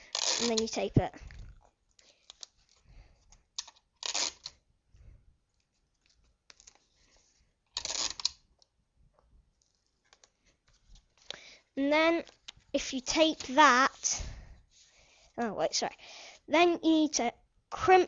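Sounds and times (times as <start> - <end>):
paper crinkling: 5.6 - 8.4.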